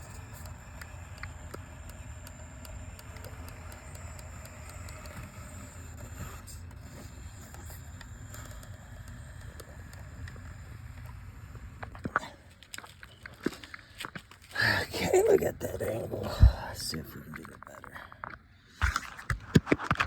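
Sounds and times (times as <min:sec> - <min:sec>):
electric motor hum: 0:00.0 - 0:13.1
small sharp clicks: 0:00.0 - 0:14.4.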